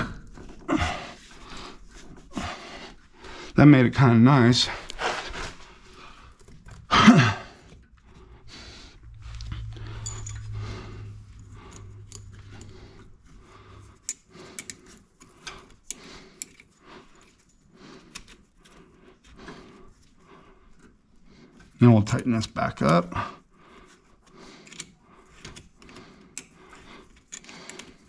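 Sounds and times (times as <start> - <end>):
low hum: 4.8 - 14.6
grunt-like sound: 6.9 - 13.8
metal tools clinking and rattling: 9.4 - 13.0.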